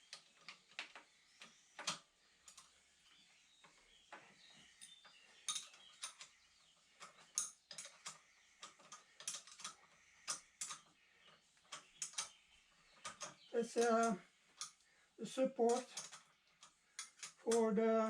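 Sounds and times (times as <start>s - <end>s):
hand tools clinking on metal: 13.0s - 16.2s.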